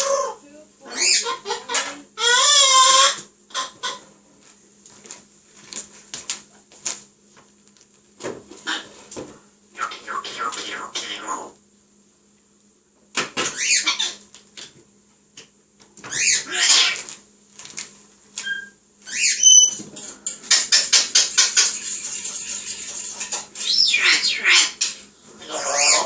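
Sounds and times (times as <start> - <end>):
parrot squawking chatter: 0.0 - 4.0, 9.8 - 11.6, 13.5 - 14.2, 16.1 - 17.1, 18.4 - 19.8, 20.5 - 26.0
parrot whistles: 18.4 - 19.8
parrot clicking chatter: 20.5 - 24.9.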